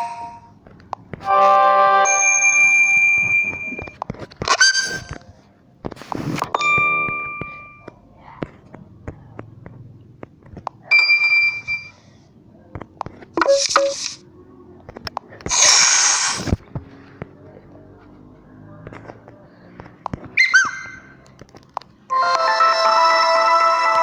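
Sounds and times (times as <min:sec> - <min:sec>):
bell-like notification ding: 0:02.1 - 0:03.7
bright steady beep: 0:10.9 - 0:12.0, 0:13.4 - 0:14.0
short hissy bursts: 0:13.5 - 0:14.2, 0:15.5 - 0:16.6.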